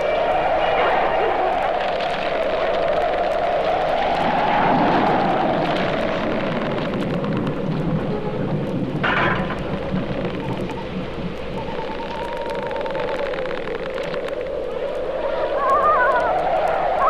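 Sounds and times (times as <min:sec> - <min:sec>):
low thunder rumble: 0:00.0 - 0:17.0
rushing rain: 0:00.0 - 0:17.0
vinyl record surface clicks: 0:09.0 - 0:15.9.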